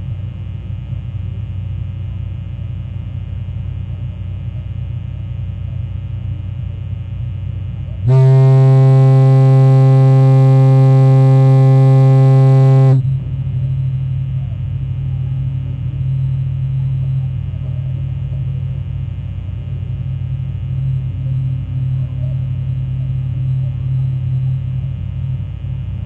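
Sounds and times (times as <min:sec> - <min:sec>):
foghorn blast: 0:08.0 - 0:13.4.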